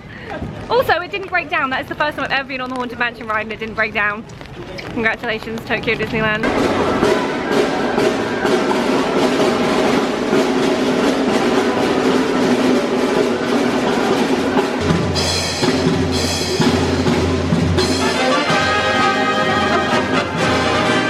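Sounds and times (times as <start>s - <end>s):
music with drum beat and bass: 6.4s - 21.0s.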